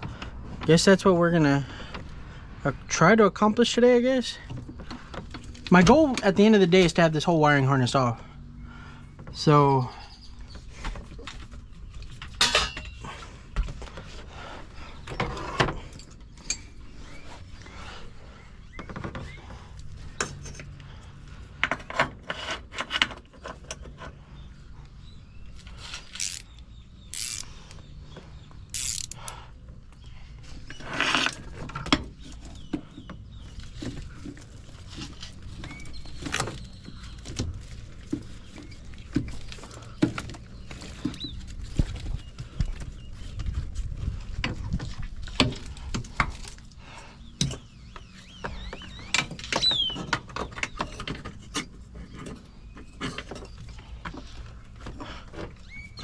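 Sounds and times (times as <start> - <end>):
metallic clicks and clanks: 28.8 - 29.4.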